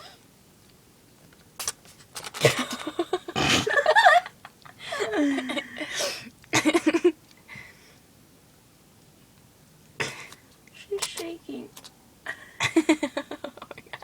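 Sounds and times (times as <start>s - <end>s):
people laughing and giggling: 2.4s - 5.9s, 12.3s - 14.0s.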